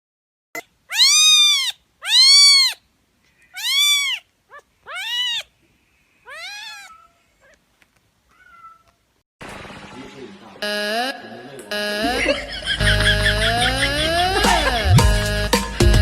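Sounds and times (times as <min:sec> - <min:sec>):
cat meowing: 0:00.6 - 0:02.8, 0:03.4 - 0:05.5, 0:06.2 - 0:07.6, 0:08.3 - 0:09.0.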